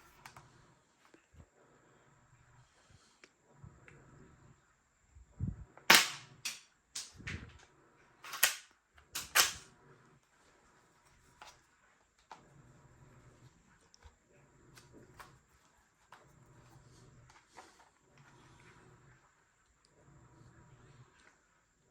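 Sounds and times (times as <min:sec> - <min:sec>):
toy gun firing snaps: 0:05.9 - 0:07.1.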